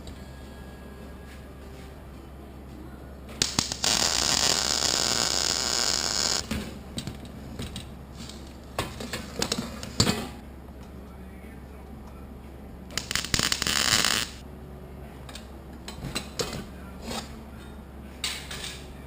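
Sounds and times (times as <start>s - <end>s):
welder arc crackling: 3.4s - 6.5s, 12.9s - 14.4s.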